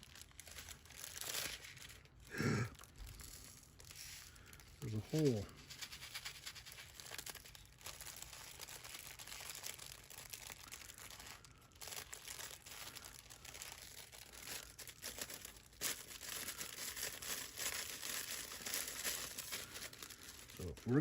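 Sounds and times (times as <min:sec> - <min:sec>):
plastic bags crinkling: 0:00.0 - 0:21.0.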